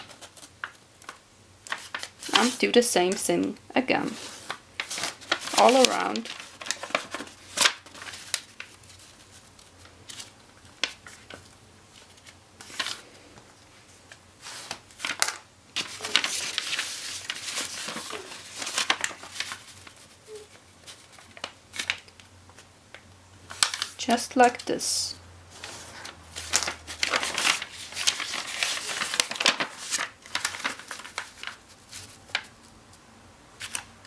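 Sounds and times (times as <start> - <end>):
paper folding crackles and rustles: 0.0 - 24.8, 25.5 - 33.0, 33.6 - 33.9.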